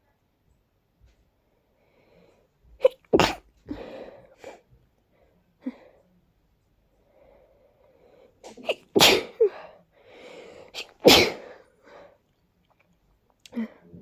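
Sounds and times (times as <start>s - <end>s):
person sneezing: 2.8s - 3.4s, 8.5s - 9.7s, 10.7s - 11.6s
catching breaths: 9.4s - 12.2s.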